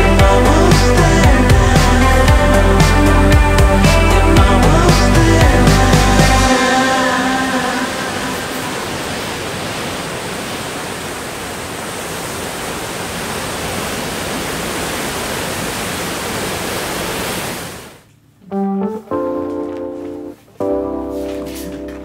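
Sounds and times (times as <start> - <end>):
background music: 0.0 - 8.9, 18.4 - 22.0
steady rushing noise: 1.6 - 18.0.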